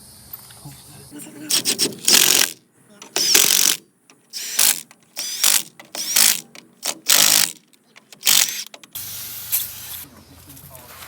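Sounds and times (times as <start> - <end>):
hand ratchet clicking: 1.5 - 9.0.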